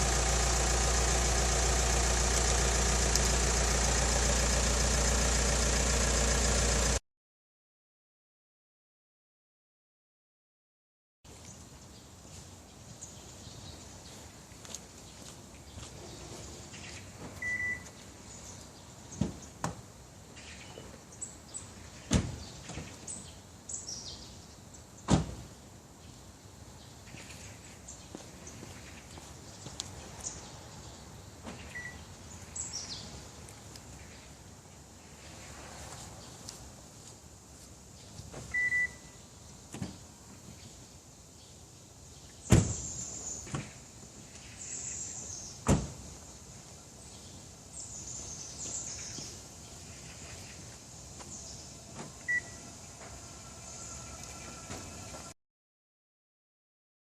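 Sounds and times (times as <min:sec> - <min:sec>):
car alarm beep: 0:17.4 - 0:17.9, 0:31.7 - 0:32.0, 0:38.5 - 0:39.2, 0:52.3 - 0:52.6
electric motor whine: 0:52.5 - 0:55.3.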